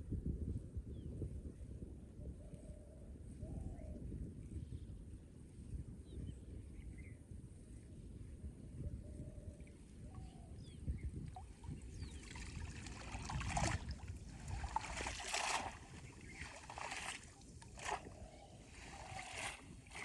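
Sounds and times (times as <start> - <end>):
water splashing and sloshing: 11.3 - 20.0.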